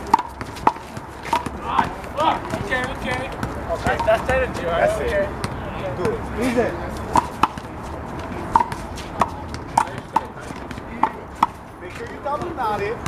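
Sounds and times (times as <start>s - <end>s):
handball smacks and bounces: 0.1s - 4.7s, 7.1s - 13.0s.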